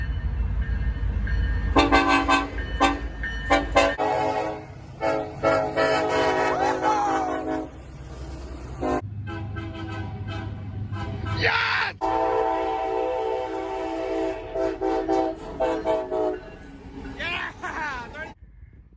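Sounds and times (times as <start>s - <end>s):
low engine rumble: 0.9s - 18.9s
locomotive air horn: 1.8s - 16.6s.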